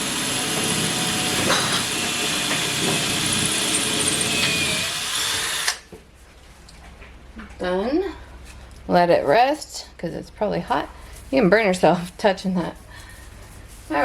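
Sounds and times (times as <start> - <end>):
electric drill boring into tile: 0.0 - 5.8.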